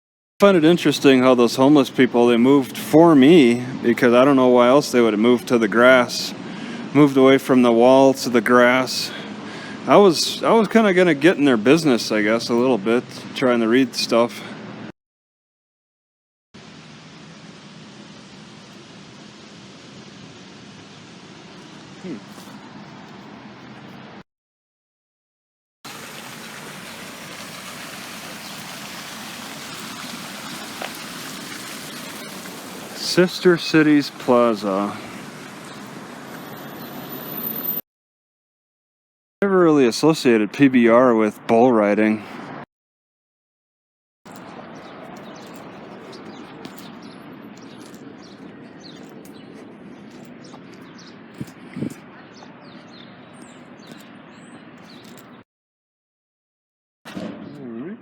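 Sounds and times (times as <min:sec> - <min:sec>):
running water hiss: 0:16.6 - 0:22.2, 0:25.9 - 0:36.6
small birds chirping: 0:20.8 - 0:24.0, 0:28.4 - 0:28.7, 0:29.6 - 0:37.8, 0:44.3 - 0:55.4.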